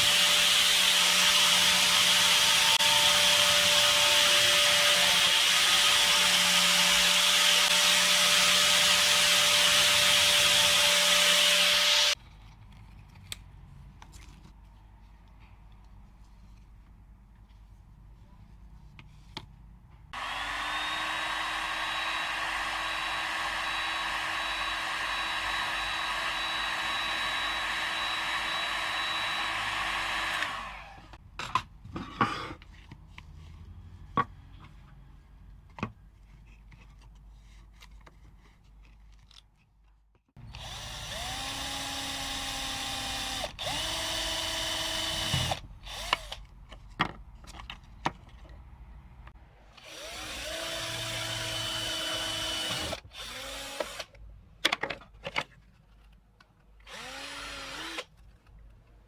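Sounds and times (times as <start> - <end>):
electric mini saw motor whining: 0.0 - 12.2, 20.2 - 31.2, 40.4 - 46.4, 49.8 - 54.1.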